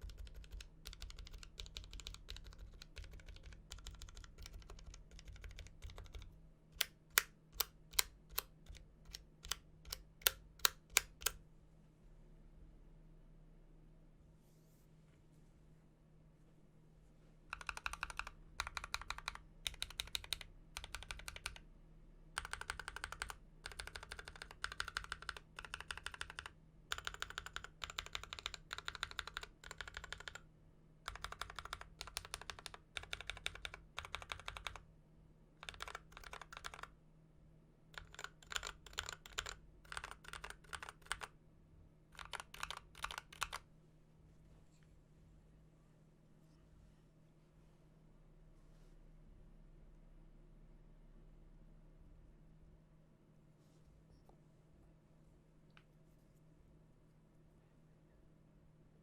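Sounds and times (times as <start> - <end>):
mechanical keyboard typing: 0.0 - 11.4, 17.5 - 21.6, 22.4 - 30.4, 31.1 - 34.8, 35.6 - 36.9, 38.0 - 41.3, 42.2 - 43.7.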